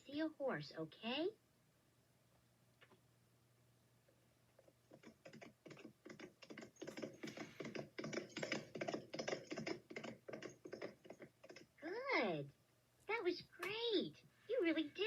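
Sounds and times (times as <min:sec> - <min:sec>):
galloping horse hoofbeats: 0:04.6 - 0:11.8.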